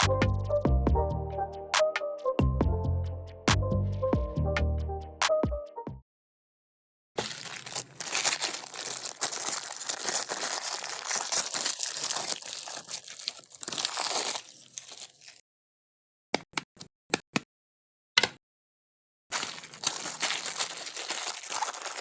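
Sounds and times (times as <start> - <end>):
meat grinder crunching: 7.2 - 15.4, 19.3 - 22.0.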